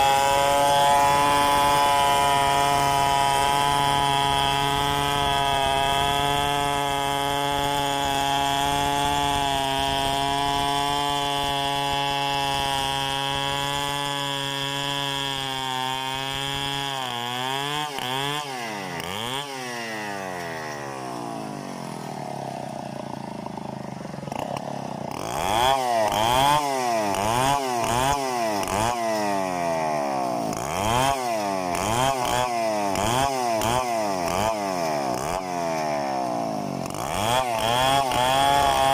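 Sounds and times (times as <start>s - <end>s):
chainsaw running and revving: 0.0s - 38.9s.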